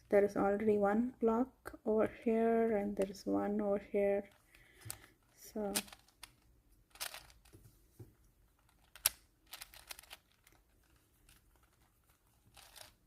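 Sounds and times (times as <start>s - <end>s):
puzzle cube clicking turns: 4.3s - 7.6s, 8.5s - 13.0s.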